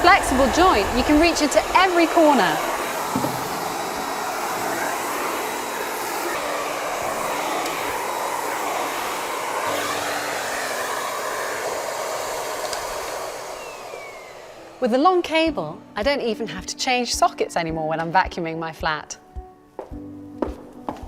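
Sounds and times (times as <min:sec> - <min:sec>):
vacuum cleaner running: 0:00.0 - 0:16.6.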